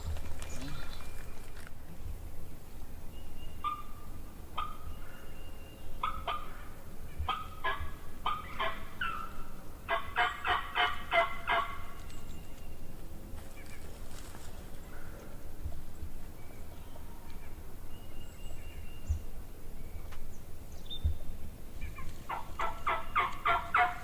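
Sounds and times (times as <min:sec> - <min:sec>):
turkey calls: 0:03.5 - 0:12.5, 0:21.8 - 0:24.0.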